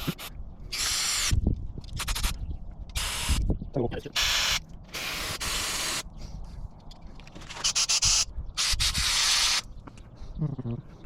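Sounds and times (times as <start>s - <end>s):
aerosol spray can hissing: 7.6s - 9.6s.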